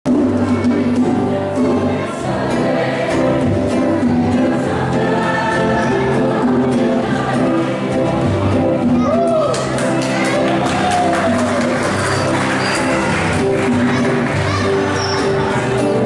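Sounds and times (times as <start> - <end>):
choir singing in harmony: 0.1 - 8.9
instrumental accompaniment: 0.1 - 16.0.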